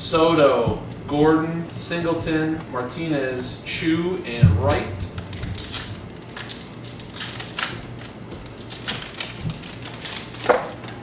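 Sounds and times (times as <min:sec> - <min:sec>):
wrappers and cards crinkling: 0:05.2 - 0:11.0.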